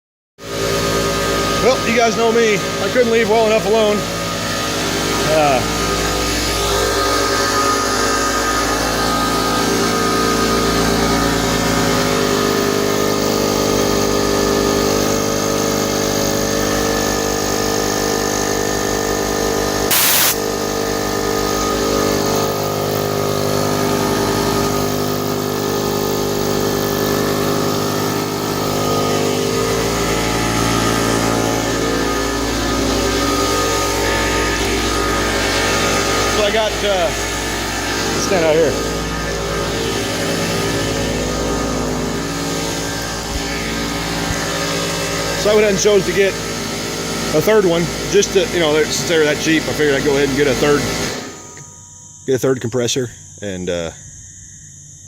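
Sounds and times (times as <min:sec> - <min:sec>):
air compressors droning: 0:00.4 - 0:53.9
short loud burst of noise: 0:19.9 - 0:20.5.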